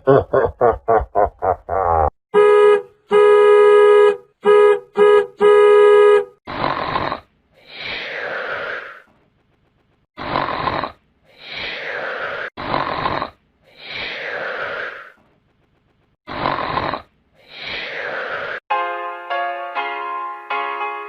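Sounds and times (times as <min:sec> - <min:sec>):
comic snoring: 0:06.5 - 0:09.1, 0:10.2 - 0:15.2, 0:16.2 - 0:18.6.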